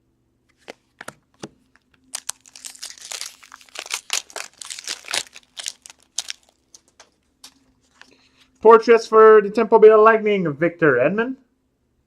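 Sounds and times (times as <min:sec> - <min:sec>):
foil wrapper crinkling: 0:00.6 - 0:08.3.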